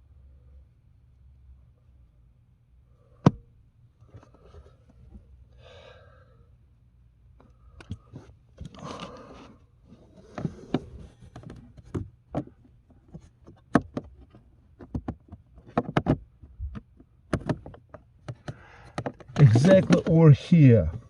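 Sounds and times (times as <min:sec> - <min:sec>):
plastic clicks and knocks: 0:10.4 - 0:20.2.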